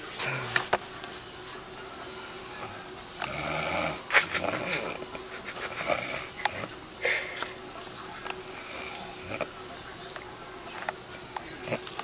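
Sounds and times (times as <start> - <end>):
woman snoring: 3.2 - 5.0, 5.8 - 6.4.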